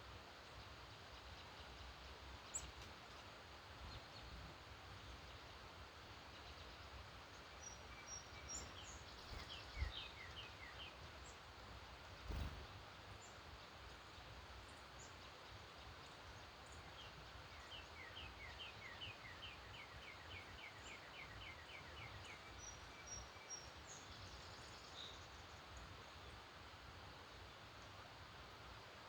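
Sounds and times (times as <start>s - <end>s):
faint background hiss: 0.0s - 29.0s
songbird singing a trill: 6.3s - 11.5s, 14.7s - 26.4s
faint high bird chirps: 7.6s - 11.4s.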